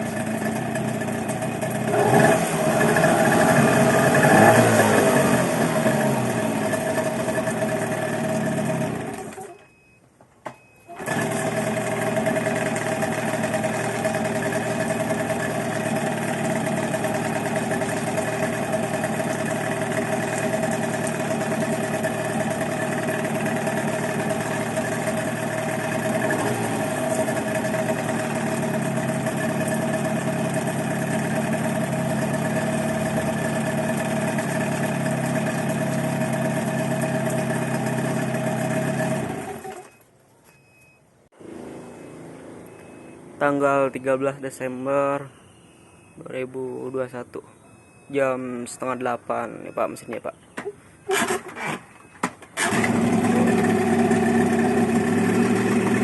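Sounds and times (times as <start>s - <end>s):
outboard motor running: 0.0s - 9.6s, 10.9s - 39.9s, 52.6s - 56.0s.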